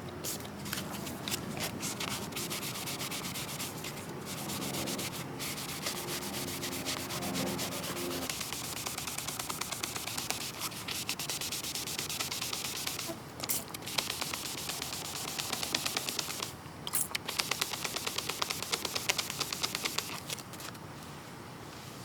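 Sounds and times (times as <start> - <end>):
sanding painted car panel: 1.6 - 13.2, 13.8 - 16.5, 17.3 - 20.4.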